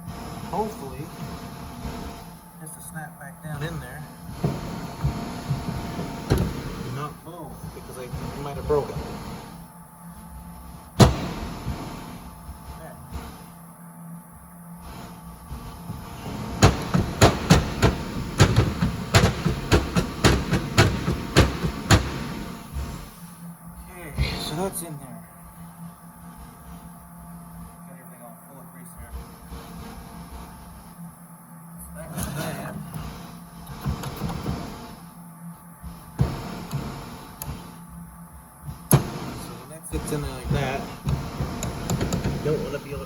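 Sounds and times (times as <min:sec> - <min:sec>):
steady low hum: 0:00.0 - 0:43.0
sharp knocks on metal part: 0:16.6 - 0:22.2.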